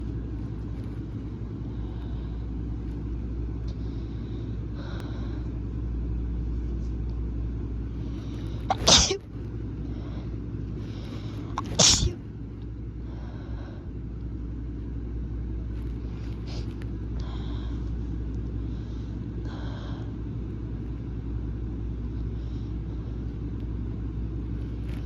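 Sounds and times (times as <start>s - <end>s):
steady low rumble: 0.0s - 25.0s
person sneezing loudly: 8.7s - 9.2s, 11.6s - 12.2s.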